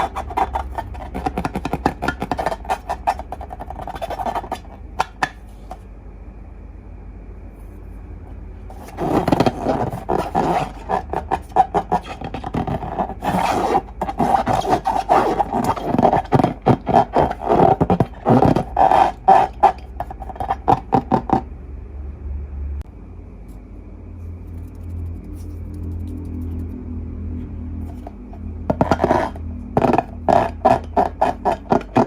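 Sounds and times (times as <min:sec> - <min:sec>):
balloons and slime squeaking: 0:08.7 - 0:21.4.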